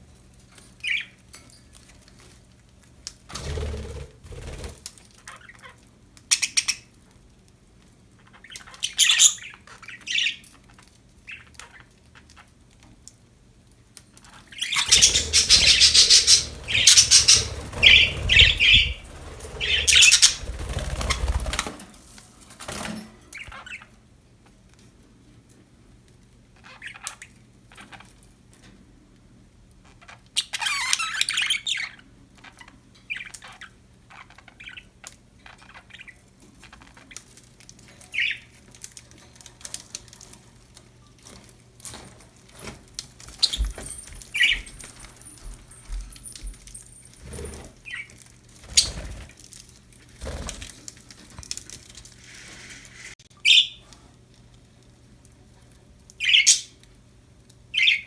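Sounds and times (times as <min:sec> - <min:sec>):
budgerigars chirping and squawking: 0:08.2 - 0:10.5, 0:14.5 - 0:21.6, 0:47.3 - 0:49.2, 0:53.0 - 0:53.8, 0:56.2 - 0:56.7.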